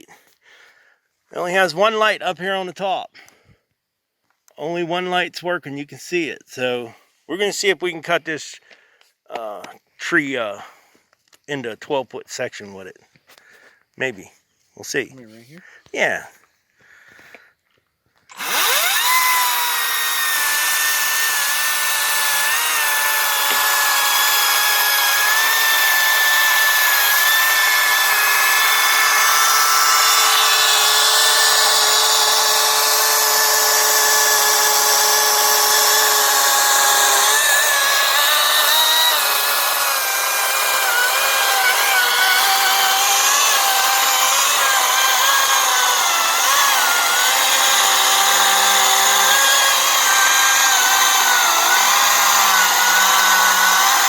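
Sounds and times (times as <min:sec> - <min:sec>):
electric chainsaw cutting wood: 0:18.1 - 0:54.0.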